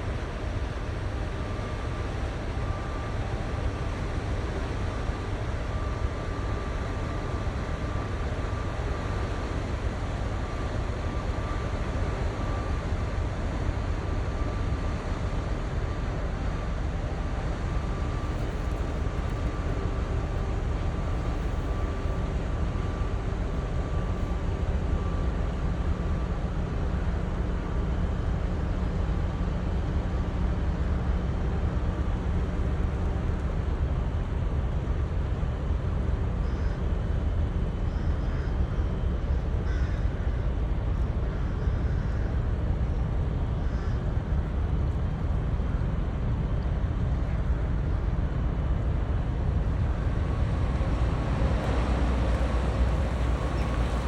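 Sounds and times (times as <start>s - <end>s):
faint humming tones: 0.0s - 54.0s
ship engine rumble: 38.6s - 54.0s.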